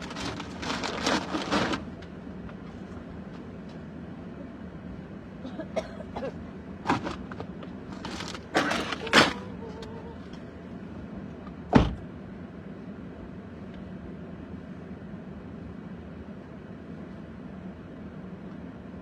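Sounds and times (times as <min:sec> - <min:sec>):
loud thump: 0:11.8 - 0:12.0.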